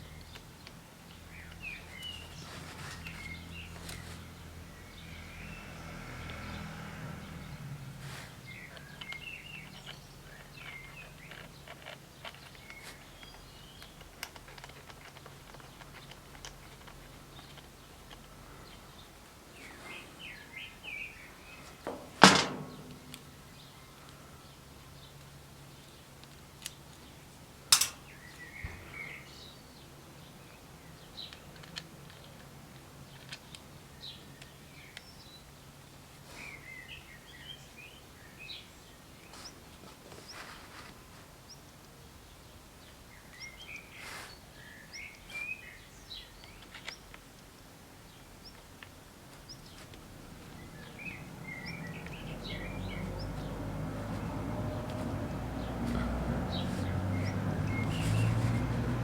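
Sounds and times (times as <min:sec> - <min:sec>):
small birds chirping: 0:00.0 - 0:59.0
sharp knocks: 0:21.9 - 0:23.3.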